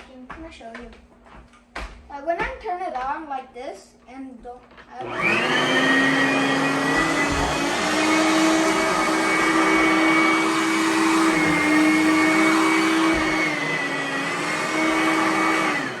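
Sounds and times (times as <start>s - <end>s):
vacuum cleaner running: 4.8s - 16.0s.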